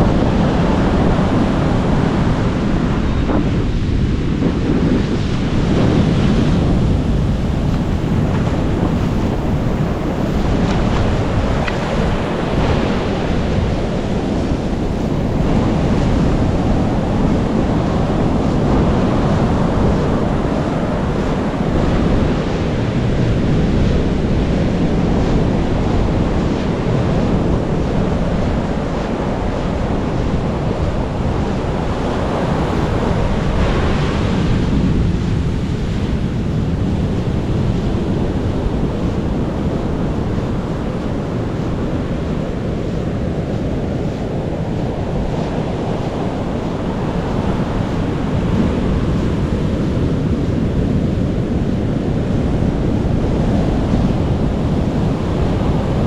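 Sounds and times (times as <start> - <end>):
wave breaking: 0.0 - 23.3
ocean surf washing: 0.0 - 56.0
wind rumble on microphone: 0.0 - 56.0.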